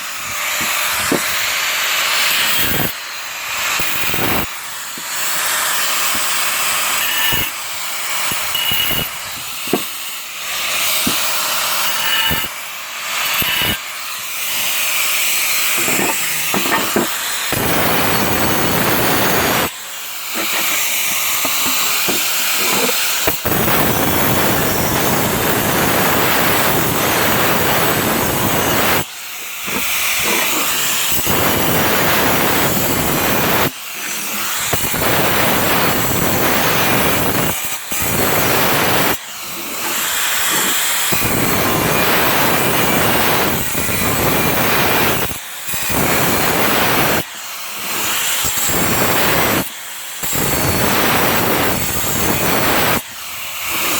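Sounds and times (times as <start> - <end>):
angle grinder cutting tile: 0.0 - 53.9.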